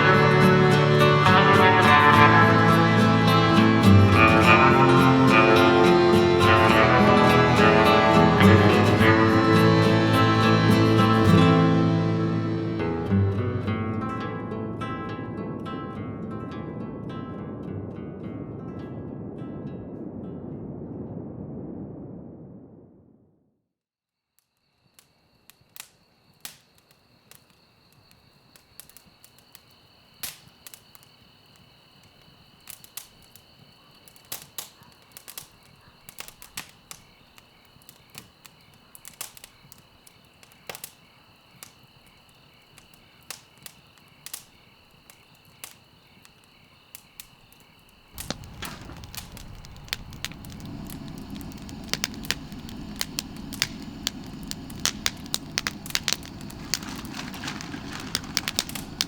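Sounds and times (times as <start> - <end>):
campfire crackling and popping: 0.0 - 11.5, 24.9 - 59.0
fire rushing burn: 16.5 - 23.2, 48.0 - 59.0.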